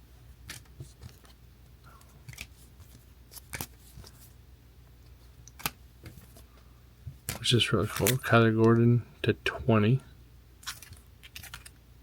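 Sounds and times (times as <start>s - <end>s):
low steady hum: 0.0s - 12.0s
cards rustling and clicking: 0.4s - 4.4s, 5.0s - 9.0s, 10.6s - 11.8s.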